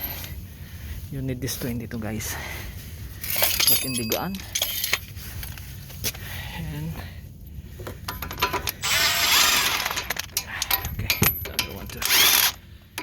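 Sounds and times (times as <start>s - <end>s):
metal tools clicking and clinking: 3.2s - 5.1s, 8.1s - 13.0s.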